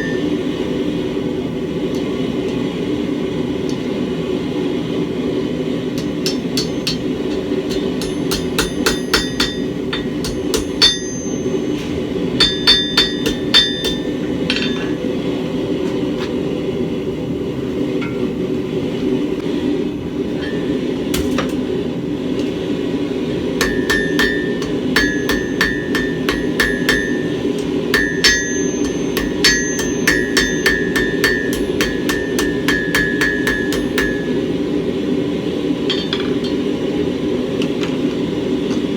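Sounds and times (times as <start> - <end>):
hammer striking steel on anvil: 0.0 - 0.8, 5.9 - 15.1, 20.3 - 21.7, 23.6 - 34.8, 35.8 - 36.8.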